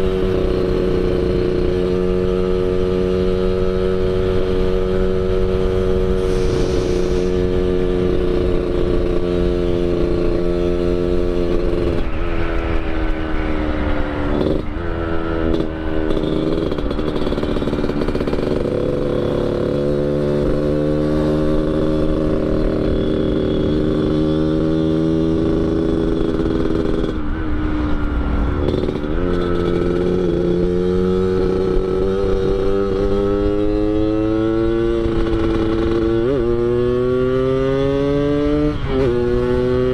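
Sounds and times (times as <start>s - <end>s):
raspy two-stroke motorcycle engine: 7.8s - 27.3s, 28.4s - 39.9s.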